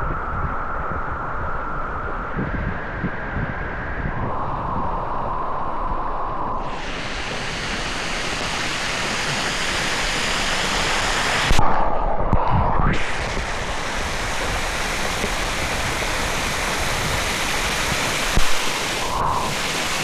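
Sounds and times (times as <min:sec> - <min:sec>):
waterfall rushing into pool: 0:06.7 - 0:11.6, 0:13.0 - 0:20.0.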